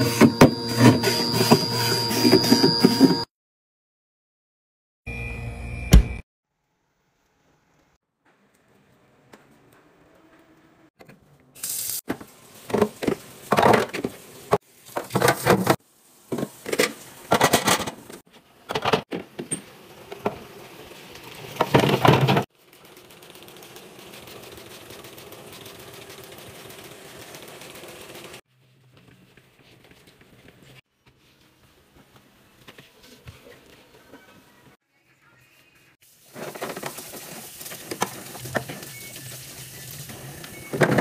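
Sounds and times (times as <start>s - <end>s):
items clattering being set down: 12.1s - 14.2s, 14.9s - 20.4s, 21.5s - 22.5s.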